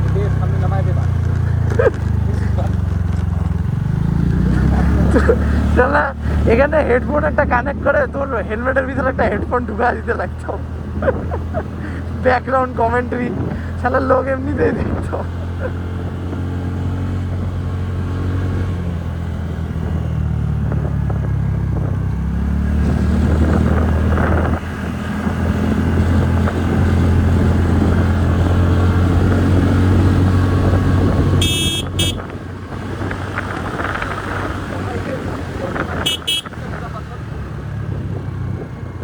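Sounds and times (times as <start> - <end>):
scooter engine under load: 0.0 - 39.0
short horn beep: 31.4 - 32.3, 36.1 - 36.6.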